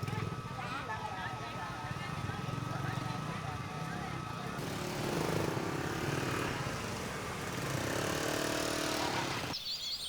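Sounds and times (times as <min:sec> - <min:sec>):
small motorbike engine revving: 0:01.9 - 0:09.6.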